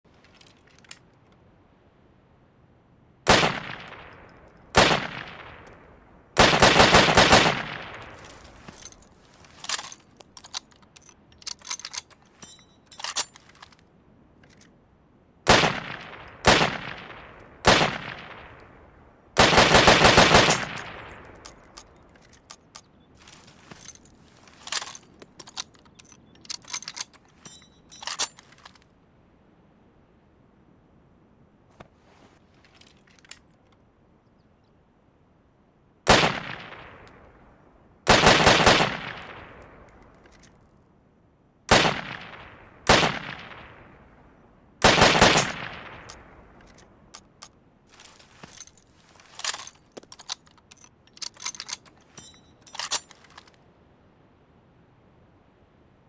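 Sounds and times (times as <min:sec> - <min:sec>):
rifle clicks and clacks: 0:00.2 - 0:01.4, 0:06.4 - 0:13.8, 0:19.4 - 0:22.9, 0:23.7 - 0:28.9, 0:44.8 - 0:53.6
rifle shots with echo: 0:03.3 - 0:05.6, 0:06.4 - 0:08.3, 0:15.5 - 0:18.6, 0:19.4 - 0:21.4, 0:36.1 - 0:37.2, 0:38.1 - 0:39.7, 0:41.7 - 0:44.0, 0:44.8 - 0:46.4.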